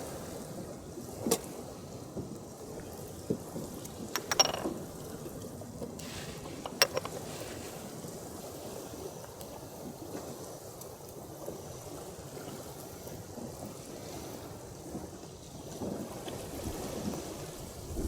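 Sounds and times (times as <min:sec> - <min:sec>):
waves lapping at shore: 0:05.7 - 0:17.8.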